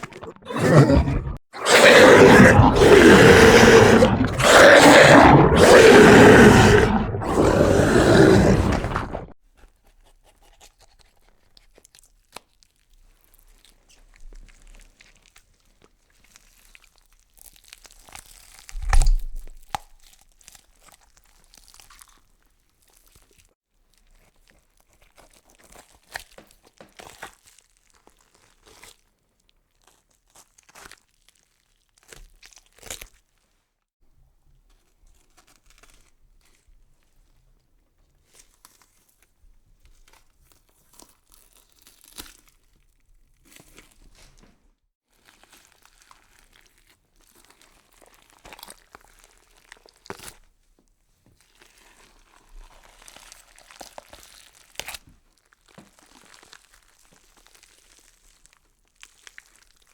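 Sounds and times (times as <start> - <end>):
faint crunching and crackling: 0.0 - 9.3
monster growl: 0.0 - 9.3.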